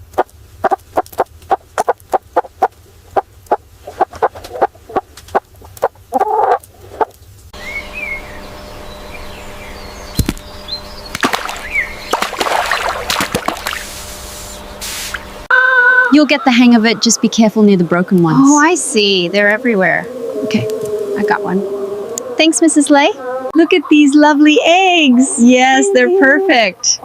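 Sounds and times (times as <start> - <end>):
chickens pecking at feed: 0.0 - 7.1
steady low hum: 0.0 - 15.5, 16.2 - 27.0
chicken clucking: 3.5 - 7.1
small birds chirping: 3.5 - 12.9.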